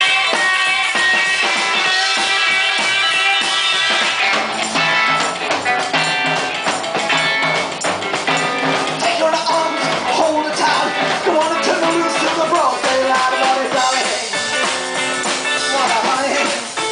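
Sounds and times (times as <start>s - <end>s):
rock band playing: 0.0s - 16.9s
low drum beat: 3.9s - 16.9s.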